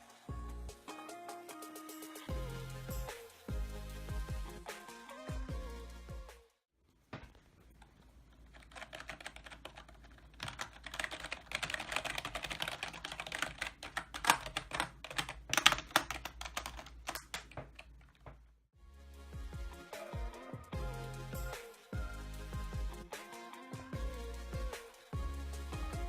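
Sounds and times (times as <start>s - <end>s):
typing on keyboard: 8.4s - 18.3s.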